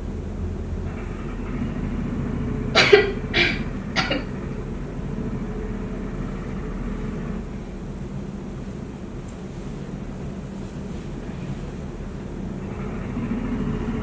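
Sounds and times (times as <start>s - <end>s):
woman coughing: 2.8s - 4.3s.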